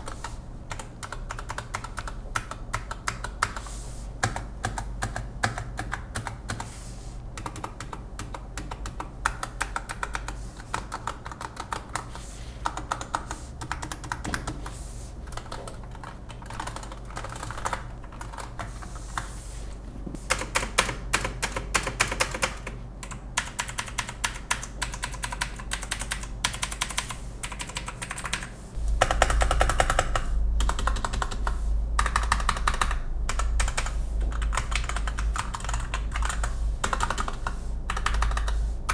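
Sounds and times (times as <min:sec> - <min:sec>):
mechanical keyboard typing: 0:00.0 - 0:06.7, 0:07.4 - 0:19.3, 0:20.3 - 0:38.9
low rumble: 0:28.8 - 0:38.9.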